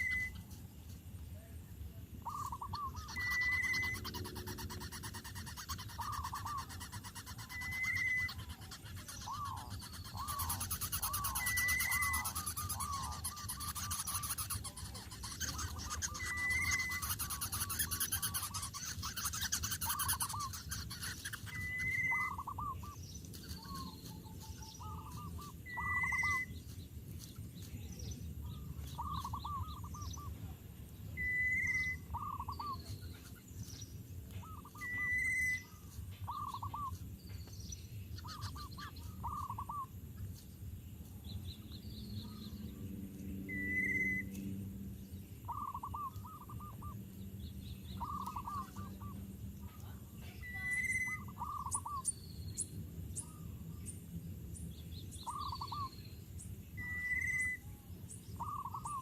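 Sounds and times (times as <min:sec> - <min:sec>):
birds chirping and trilling: 0:00.0 - 0:59.0
bird whistled note: 0:10.2 - 0:13.0.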